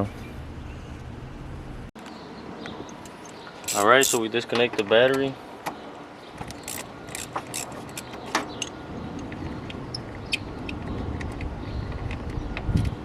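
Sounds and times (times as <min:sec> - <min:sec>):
low steady rumble: 0:00.0 - 0:01.9.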